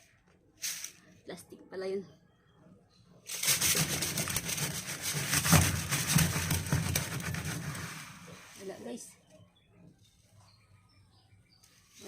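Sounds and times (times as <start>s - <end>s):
rustling and scraping: 0.0s - 1.2s, 3.3s - 9.0s.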